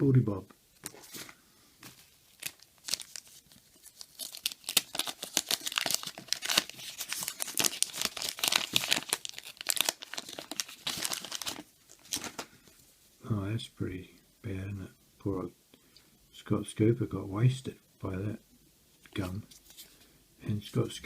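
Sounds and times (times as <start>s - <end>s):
paper wrapper tearing and crinkling: 2.3s - 12.5s.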